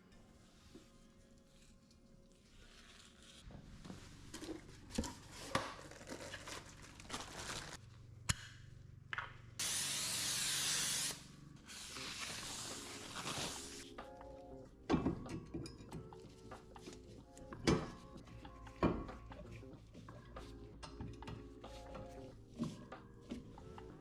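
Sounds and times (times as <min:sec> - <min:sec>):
steady hiss: 0:09.6 - 0:13.9.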